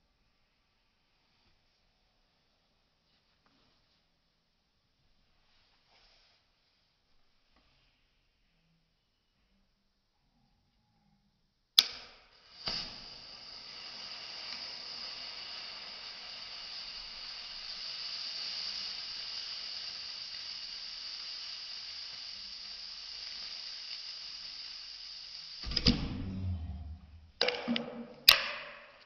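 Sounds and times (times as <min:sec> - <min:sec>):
loud hiss of spraying: 0:12.0 - 0:26.0
low rumbling: 0:25.7 - 0:28.2
sharp crack: 0:27.4 - 0:29.0.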